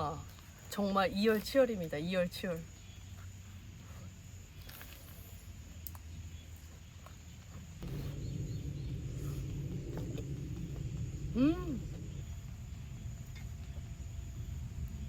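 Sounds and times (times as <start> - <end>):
low rushing noise: 7.8 - 15.0.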